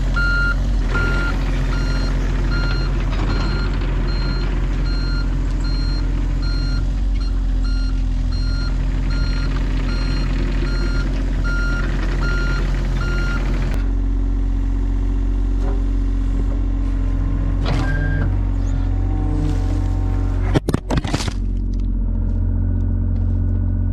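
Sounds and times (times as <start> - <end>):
diesel engine running: 0.0 - 23.9
backup alarm beeping: 0.2 - 13.5, 17.8 - 18.3.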